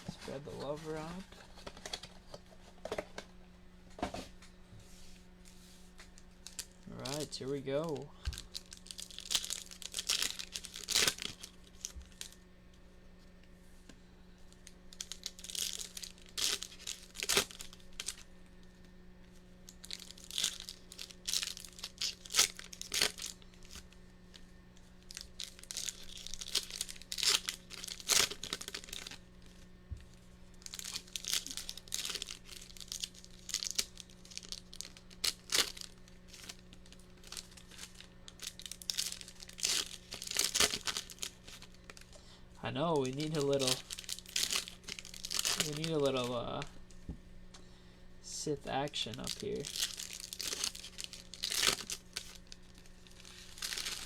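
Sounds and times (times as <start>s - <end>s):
card pack wrappers tearing: 6.4s - 12.4s, 14.5s - 18.3s, 19.6s - 29.7s, 30.5s - 42.1s, 42.7s - 46.7s, 48.6s - 54.0s.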